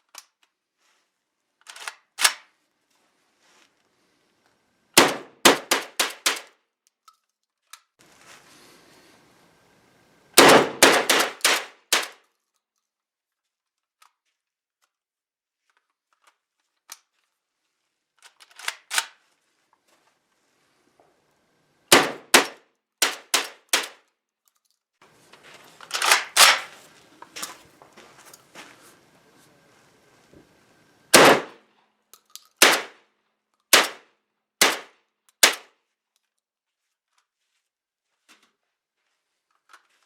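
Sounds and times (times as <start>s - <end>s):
shotgun firing rapid shots: 5.0s - 6.5s, 10.4s - 12.1s, 21.9s - 24.0s, 31.1s - 31.6s, 32.6s - 33.0s, 33.7s - 34.0s, 34.6s - 35.6s.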